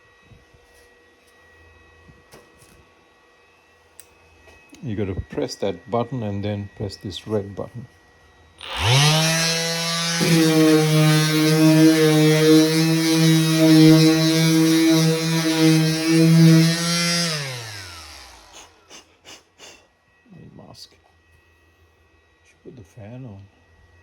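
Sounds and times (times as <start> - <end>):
orbital sander running: 8.6 - 19.0.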